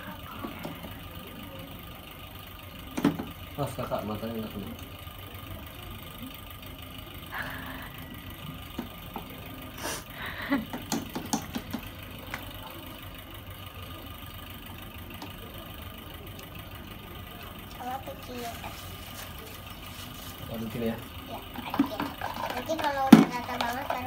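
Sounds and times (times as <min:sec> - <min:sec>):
low background hum: 0:00.0 - 0:24.0
utensil scraping container: 0:21.6 - 0:24.0.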